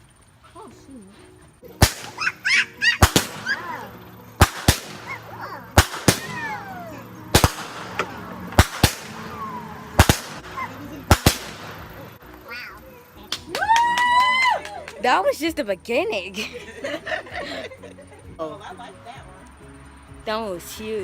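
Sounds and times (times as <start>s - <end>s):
fireworks popping and banging: 1.7s - 12.2s.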